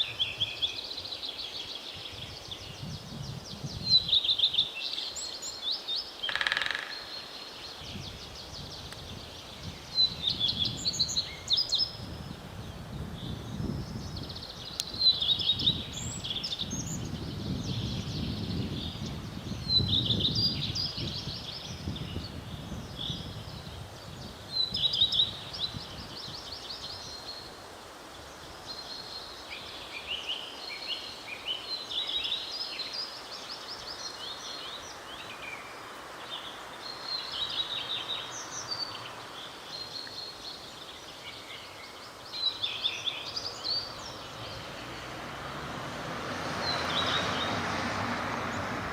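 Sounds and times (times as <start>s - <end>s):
songbird trilling: 6.2s - 7.3s.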